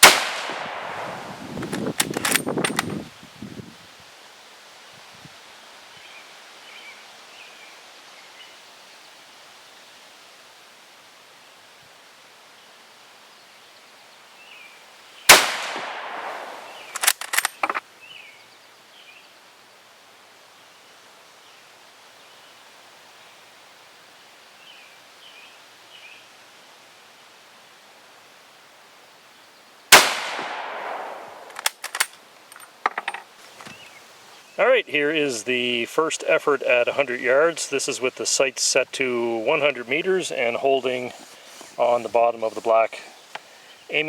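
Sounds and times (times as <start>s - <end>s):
rifle shots with echo: 0.0s - 1.3s, 15.3s - 16.9s, 29.9s - 31.5s
rifle bolt metallic clicks: 1.6s - 2.9s, 16.9s - 17.8s, 31.4s - 33.2s.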